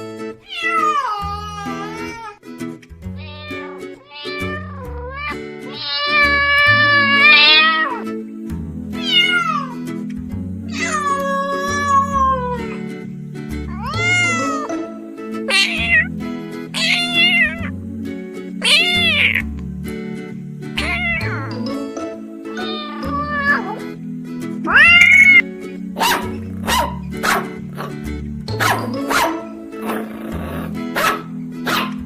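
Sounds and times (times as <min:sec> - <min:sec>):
background music: 0:00.0 - 0:32.0
cat meowing: 0:00.4 - 0:02.4, 0:03.2 - 0:08.0, 0:09.0 - 0:09.8, 0:10.7 - 0:12.8, 0:13.7 - 0:14.8, 0:15.5 - 0:16.1, 0:16.8 - 0:17.7, 0:18.6 - 0:19.4, 0:20.8 - 0:21.6, 0:22.5 - 0:23.8, 0:24.7 - 0:25.4.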